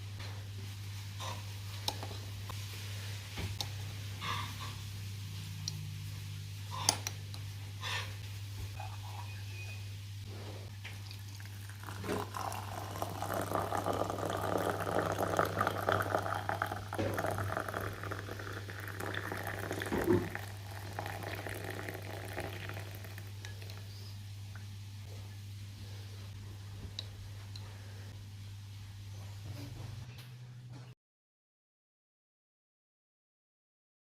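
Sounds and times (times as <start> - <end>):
steady low hum: 0.0 - 30.9
dense crackling liquid sound: 11.5 - 23.2.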